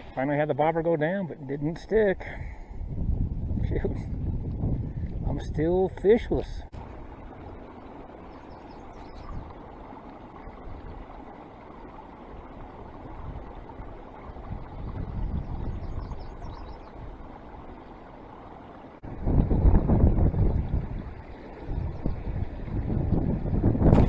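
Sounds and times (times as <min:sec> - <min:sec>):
low buffeting wind gust: 0:01.9 - 0:24.0
wind blowing over microphone: 0:02.1 - 0:07.3, 0:08.9 - 0:09.7, 0:12.8 - 0:17.8, 0:19.0 - 0:24.0.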